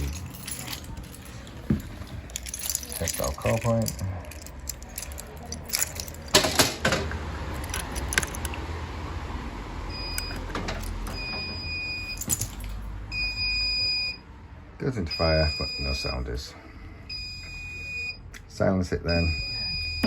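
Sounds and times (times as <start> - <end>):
alarm buzzer high beeps: 19.1 - 20.0.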